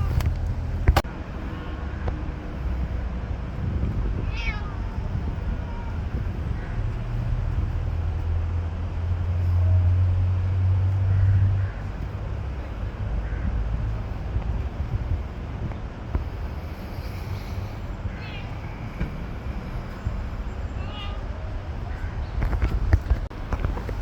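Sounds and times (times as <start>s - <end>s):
steady low rumble: 0.0s - 24.0s
cat meowing: 4.2s - 6.1s, 18.1s - 18.7s, 20.8s - 21.2s.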